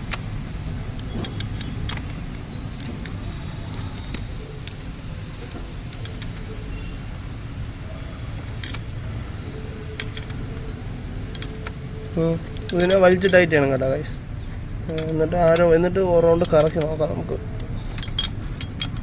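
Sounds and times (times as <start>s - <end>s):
steady low hum: 0.0s - 19.0s
metallic clicks of hand tools: 8.5s - 8.8s, 10.0s - 10.4s, 11.3s - 11.8s, 12.6s - 13.4s, 16.4s - 19.0s.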